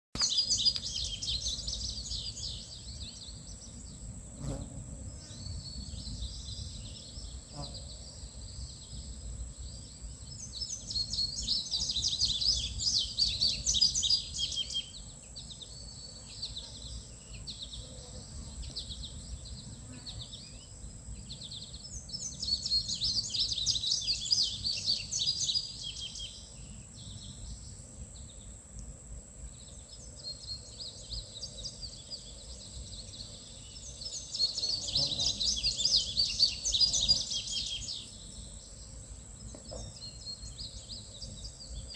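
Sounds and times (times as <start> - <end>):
songbird chirping: 0.2 - 41.9.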